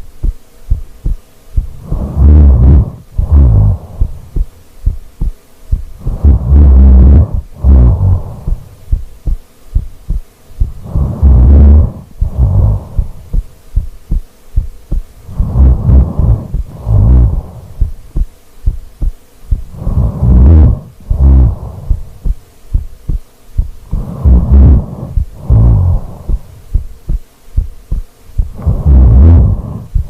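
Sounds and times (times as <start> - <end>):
heartbeat thumping: 0.0 - 30.0
woman snoring: 1.6 - 4.4, 6.0 - 8.8, 10.6 - 13.4, 15.2 - 17.9, 19.6 - 22.4, 23.8 - 26.8, 28.4 - 30.0.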